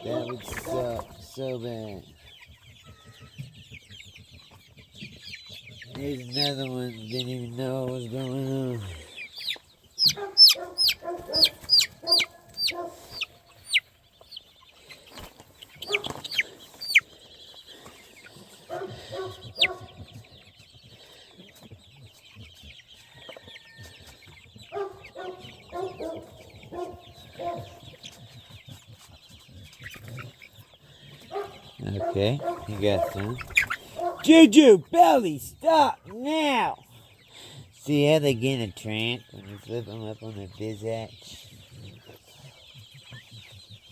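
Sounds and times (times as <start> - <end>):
chickens clucking: 0.0 - 43.9
high falling peeps: 6.0 - 14.4, 15.8 - 17.0.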